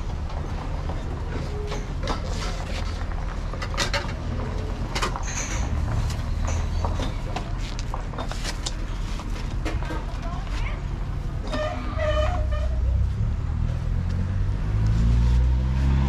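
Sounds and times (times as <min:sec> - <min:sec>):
clicks knocks and clatter: 0:00.4 - 0:10.1.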